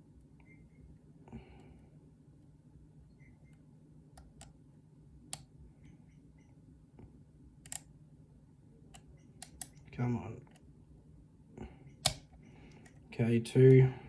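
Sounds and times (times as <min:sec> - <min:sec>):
lock pick clicking in lock: 0:07.6 - 0:07.8, 0:08.9 - 0:09.8, 0:12.0 - 0:13.0.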